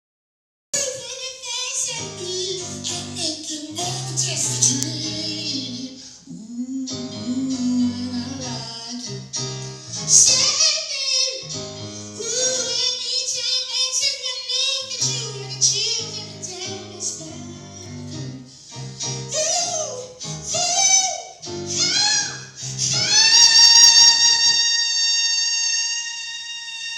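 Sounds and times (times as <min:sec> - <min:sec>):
keyboard and bass chords: 0:02.0 - 0:05.9, 0:06.8 - 0:10.4, 0:11.5 - 0:12.8, 0:15.0 - 0:20.8, 0:21.4 - 0:23.2
high soulful singing voice: 0:02.0 - 0:09.4, 0:12.2 - 0:18.5, 0:21.8 - 0:26.9.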